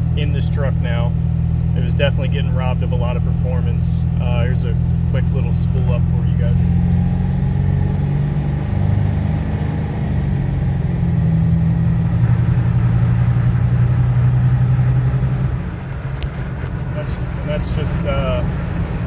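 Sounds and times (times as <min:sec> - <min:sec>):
engine low drone: 0:00.0 - 0:19.0
turbocharger whistle: 0:06.6 - 0:15.9.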